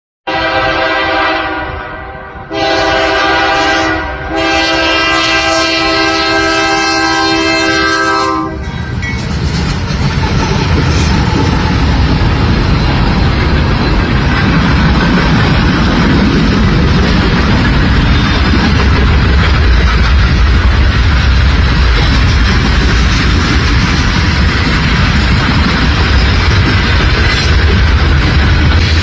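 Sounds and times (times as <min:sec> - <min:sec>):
locomotive horn blasts: 0:00.3 - 0:08.7
train rumbling and rattling past: 0:00.3 - 0:29.0.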